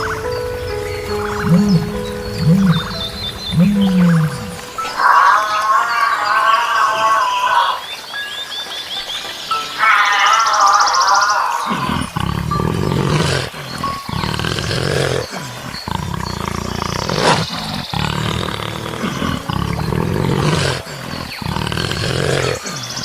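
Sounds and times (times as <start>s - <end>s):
large animal roaring: 1.4s - 7.8s, 11.4s - 23.0s.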